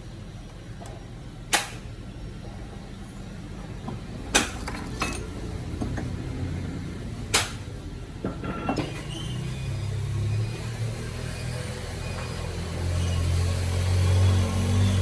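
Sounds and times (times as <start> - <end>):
tools knocking and clinking: 3.8 - 6.2, 8.2 - 8.8.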